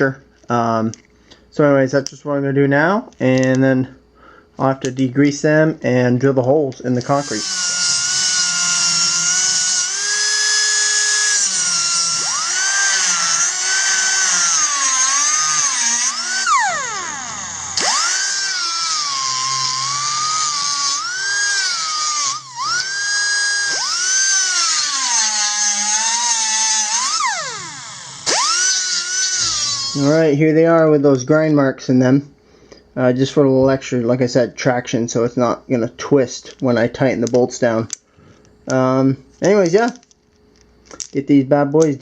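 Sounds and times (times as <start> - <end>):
angle grinder cutting metal: 7.0 - 30.2.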